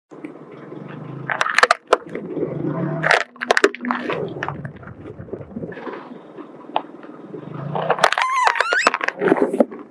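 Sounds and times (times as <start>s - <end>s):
low steady rumble: 0.1s - 8.5s
objects cracking under car wheel: 0.2s - 2.3s, 3.0s - 6.0s, 7.7s - 9.9s.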